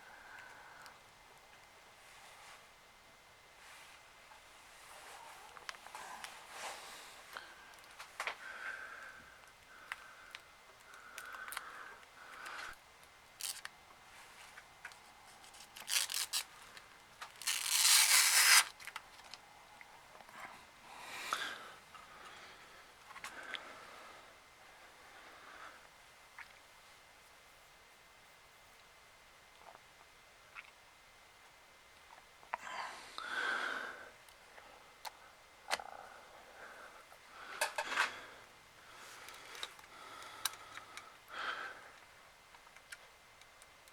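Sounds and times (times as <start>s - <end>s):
short scratchy noises: 17.4s - 18.7s.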